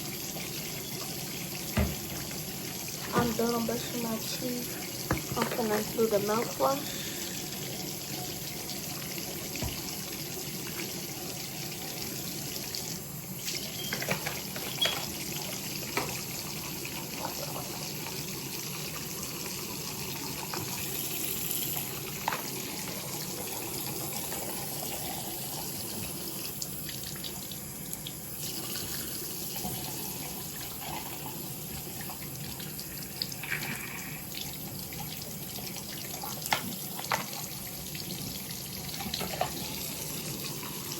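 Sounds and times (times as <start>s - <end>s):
tap running into sink: 0.8s - 3.8s, 4.9s - 6.6s, 9.4s - 10.2s, 13.5s - 16.3s.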